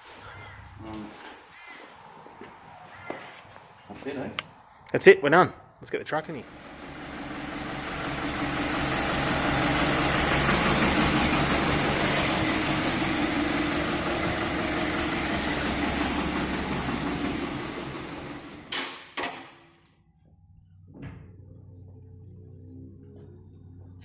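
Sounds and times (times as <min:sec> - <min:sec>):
truck engine running: 0:06.4 - 0:18.7, 0:20.8 - 0:24.0.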